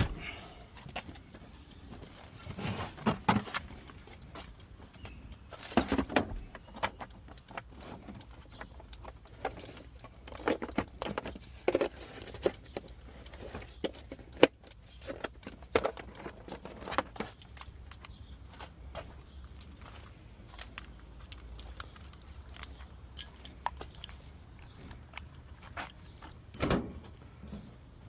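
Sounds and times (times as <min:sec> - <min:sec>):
small hard objects clicking: 0:20.5 - 0:26.4.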